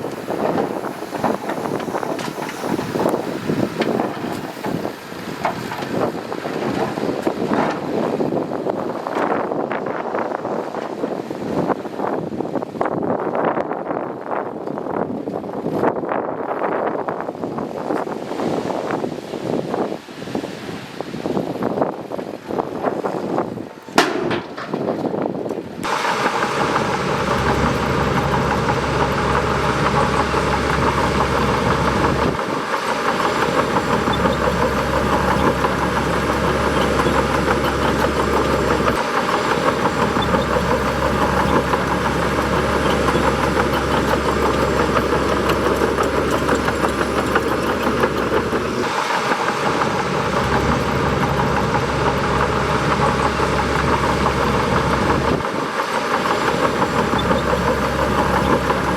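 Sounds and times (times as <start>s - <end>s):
bulldozer diesel engine running: 0.0s - 9.2s, 24.0s - 58.9s.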